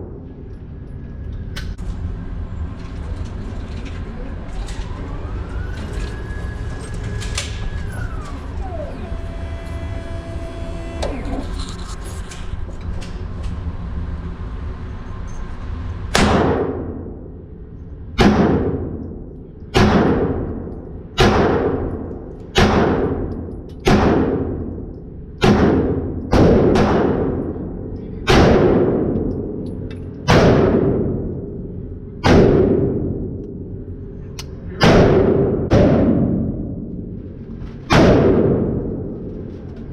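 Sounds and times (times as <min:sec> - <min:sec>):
steady drone with held tones: 0:04.0 - 0:16.1.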